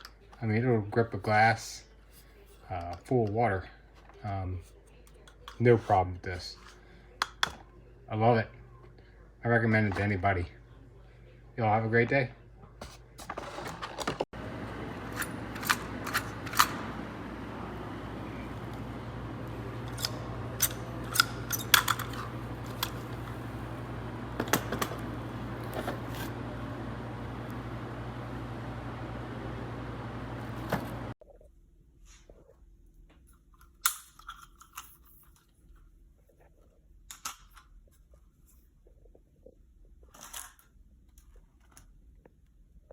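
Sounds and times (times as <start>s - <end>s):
steady low hum: 14.4s - 31.7s.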